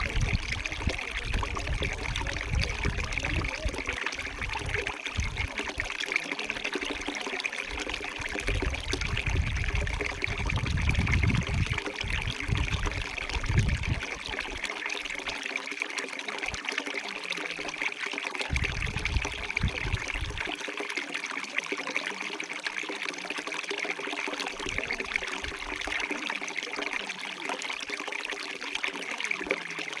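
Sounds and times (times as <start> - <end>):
stream water trickling: 0.0 - 30.0.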